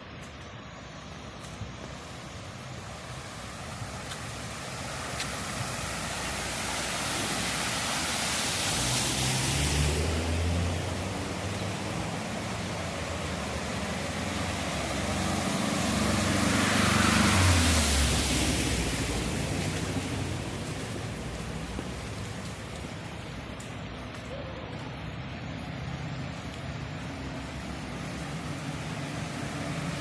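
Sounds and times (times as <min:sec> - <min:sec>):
tyres hissing through water: 0:01.8 - 0:22.7
heavy rain: 0:01.8 - 0:30.0
car engine passing: 0:03.2 - 0:22.6.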